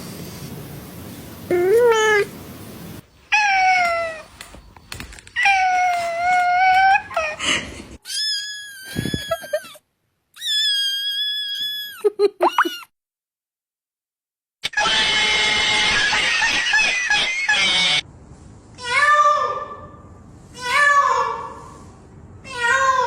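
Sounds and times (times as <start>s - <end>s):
cats meowing: 1.5s - 2.3s, 3.3s - 4.5s.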